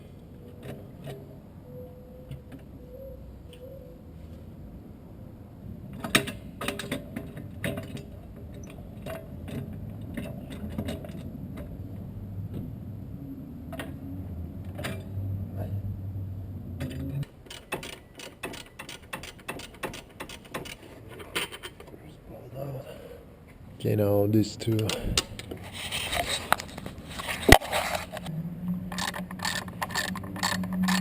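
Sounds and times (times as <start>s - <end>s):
ratchet wrench clicking: 17.5s - 20.8s, 28.9s - 31.0s
metallic tool clicks: 28.9s - 31.0s.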